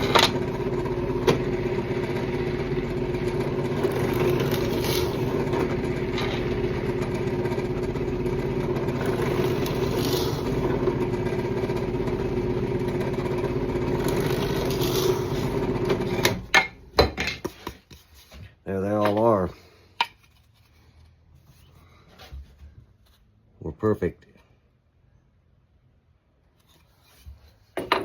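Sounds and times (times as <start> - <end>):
drilling into wood: 0.0 - 16.6
drill press motor humming: 0.0 - 16.7.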